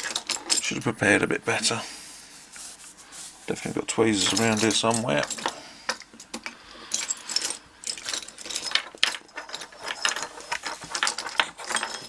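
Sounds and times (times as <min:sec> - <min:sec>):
small metal tools clinking: 0:00.0 - 0:00.8, 0:04.2 - 0:12.0.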